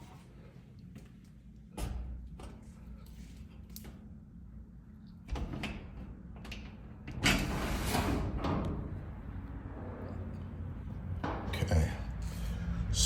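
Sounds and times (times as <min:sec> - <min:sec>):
garage door rolling up: 0:05.3 - 0:11.6.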